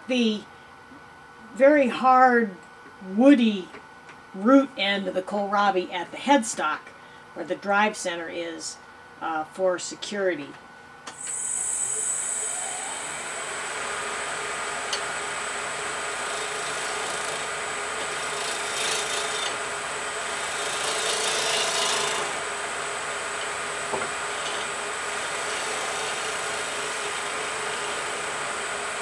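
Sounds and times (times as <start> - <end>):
wood lathe humming: 11.3 - 29.0.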